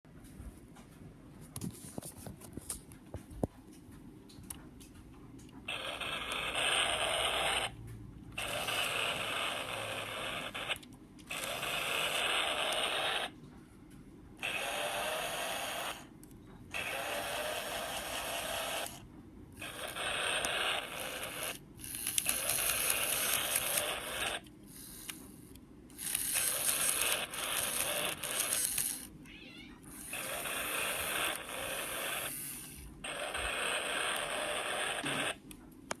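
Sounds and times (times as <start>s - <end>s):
toy vehicle sound effects: 5.7s - 7.8s, 8.4s - 13.3s, 14.4s - 16.1s, 16.7s - 19.0s, 19.6s - 35.4s.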